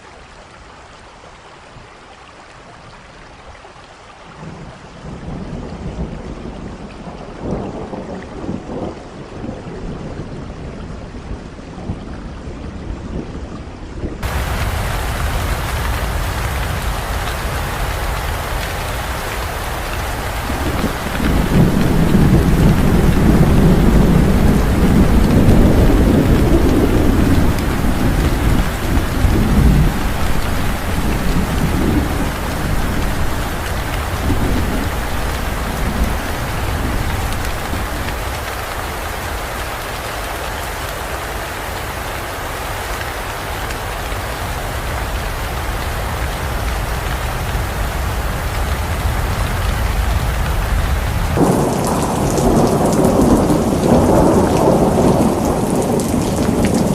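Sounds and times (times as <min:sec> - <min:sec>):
heavy rain: 0:00.0 - 0:56.9
thunder rumbling: 0:14.2 - 0:40.0, 0:44.7 - 0:56.9.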